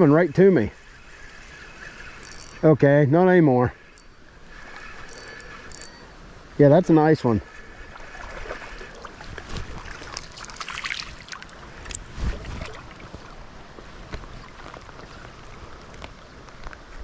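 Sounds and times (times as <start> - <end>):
river water sloshing: 7.6 - 11.7.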